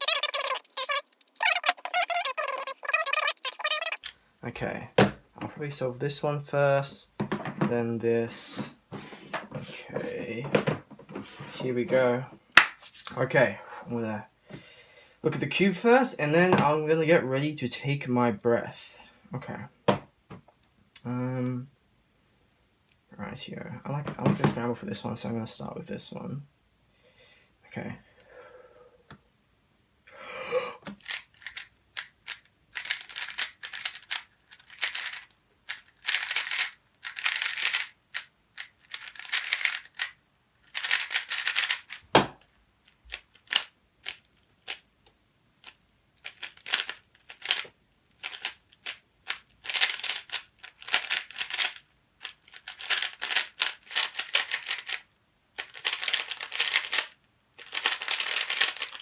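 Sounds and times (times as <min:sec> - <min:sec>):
puzzle cube plastic clicking: 0:00.0 - 0:04.1, 0:30.8 - 0:55.0, 0:55.6 - 0:59.0.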